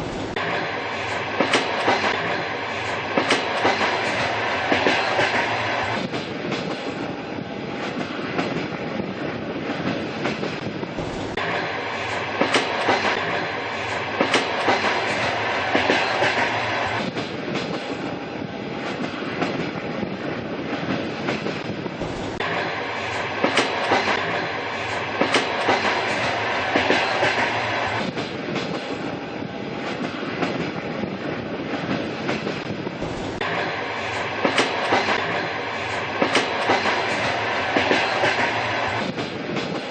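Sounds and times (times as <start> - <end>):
train rolling rumble: 0.0 - 39.9
wheel clacks over rail joints: 14.2 - 18.0, 25.2 - 29.0, 34.4 - 39.9.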